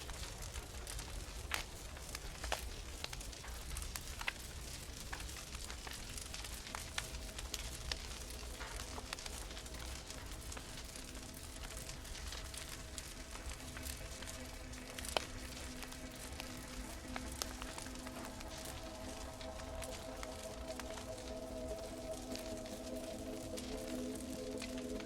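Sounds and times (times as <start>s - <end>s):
wood fire crackling: 0.0s - 25.0s.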